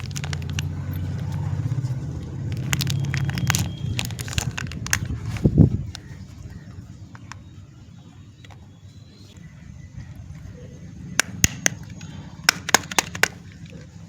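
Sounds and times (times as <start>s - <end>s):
packaging clicks and taps: 0.0s - 6.2s, 7.1s - 7.6s, 11.2s - 14.0s.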